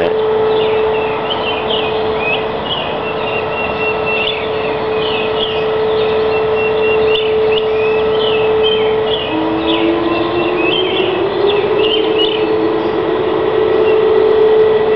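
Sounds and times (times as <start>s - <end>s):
birds chirping: 0.0s - 14.9s
steady drone: 0.0s - 14.9s.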